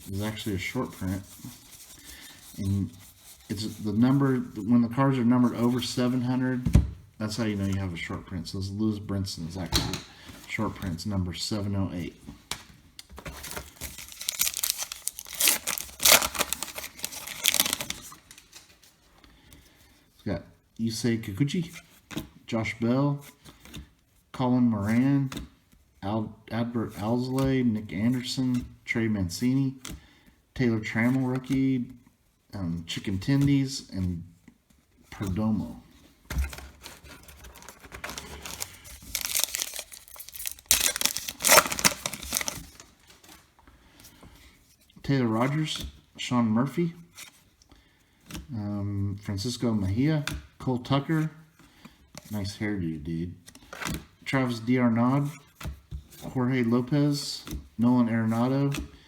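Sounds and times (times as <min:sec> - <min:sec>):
wrapper tearing and crinkling: 0:13.4 - 0:18.7, 0:36.8 - 0:42.9.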